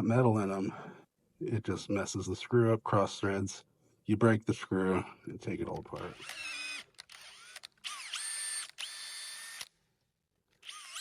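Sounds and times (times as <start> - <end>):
cordless drill whining: 6.0 - 9.8, 10.5 - 11.0.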